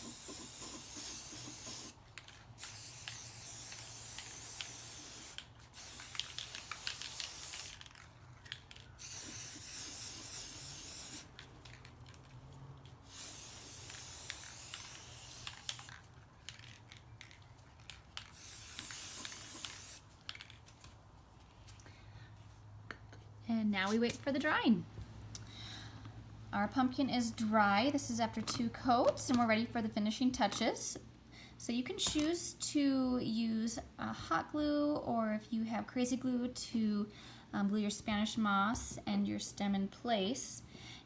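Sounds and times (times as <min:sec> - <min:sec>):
spray can clicking: 0:00.0 - 0:11.9, 0:13.1 - 0:16.6, 0:17.9 - 0:20.6
spray paint can spraying: 0:00.0 - 0:12.2, 0:13.0 - 0:20.6.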